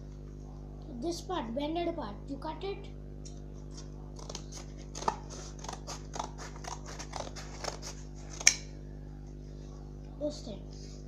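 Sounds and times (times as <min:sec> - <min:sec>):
scissors cutting cardboard: 0:03.6 - 0:08.6.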